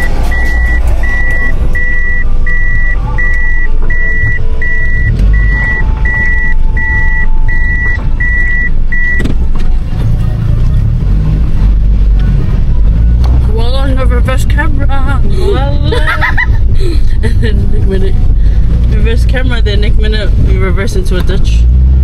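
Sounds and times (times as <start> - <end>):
reversing warning beeper: 0.0 - 9.3
car rumble: 0.0 - 22.0.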